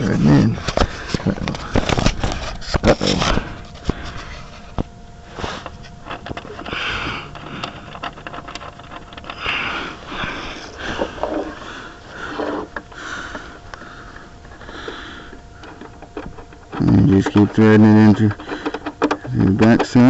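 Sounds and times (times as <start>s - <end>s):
bolt clicking and scraping: 6.0s - 9.5s, 15.6s - 20.0s.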